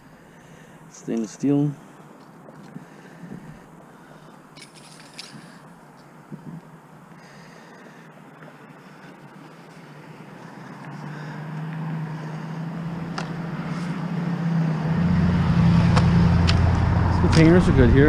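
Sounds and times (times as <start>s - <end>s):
vehicle engine humming: 5.3s - 18.0s.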